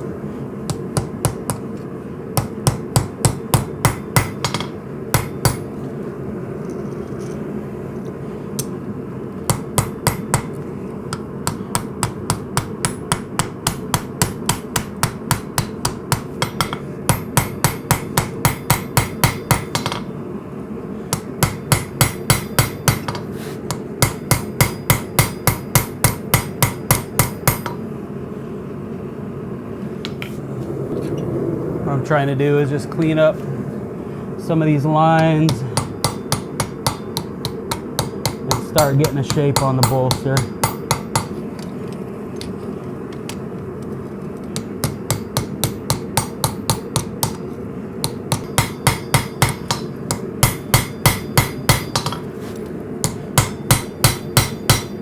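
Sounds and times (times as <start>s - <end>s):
steady hum: 0.0s - 55.0s
hammer striking steel on anvil: 0.7s - 1.7s, 2.4s - 5.8s, 9.5s - 20.1s, 21.1s - 27.8s, 35.2s - 41.4s, 44.6s - 52.3s, 53.0s - 55.0s.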